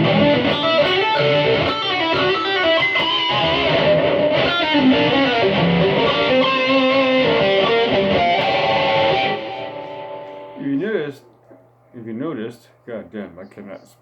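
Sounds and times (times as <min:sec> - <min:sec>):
electric guitar single notes: 0:00.0 - 0:10.9.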